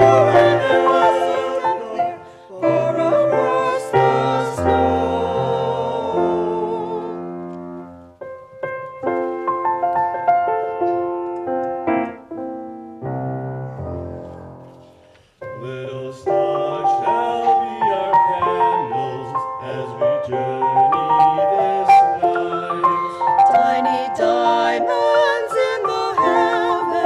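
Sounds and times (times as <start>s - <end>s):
vocal ensemble singing carol: 0.0s - 7.8s, 15.4s - 27.0s
piano accompaniment: 0.0s - 27.0s.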